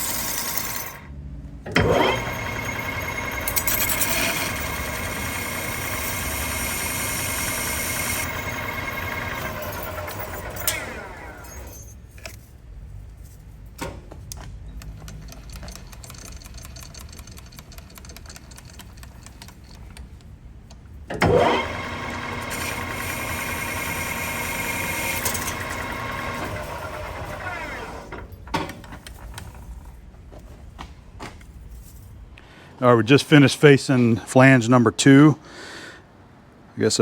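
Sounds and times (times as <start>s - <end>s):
lathe motor running: 0.0s - 1.0s, 1.7s - 11.8s, 21.2s - 28.2s.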